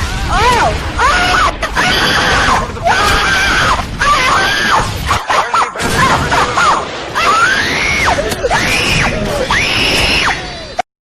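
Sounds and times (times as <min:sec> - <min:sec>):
high-pitched screaming: 0:07.6 - 0:10.4.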